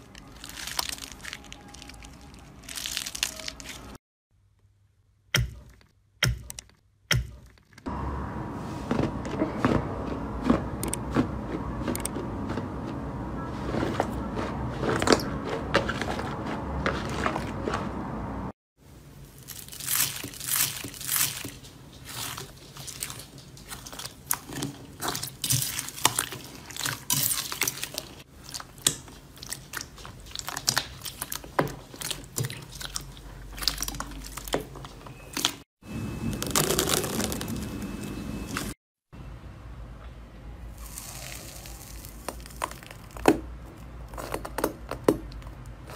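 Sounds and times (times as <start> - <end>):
crunchy slime crackling and popping: 0.0 - 4.0, 19.4 - 34.6, 36.3 - 37.7, 40.8 - 45.1.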